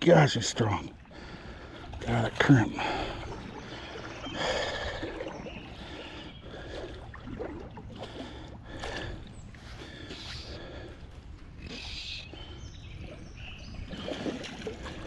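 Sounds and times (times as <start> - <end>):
water splashing: 0.0 - 15.0
hard breathing: 1.0 - 2.0, 2.8 - 5.2, 8.0 - 12.7.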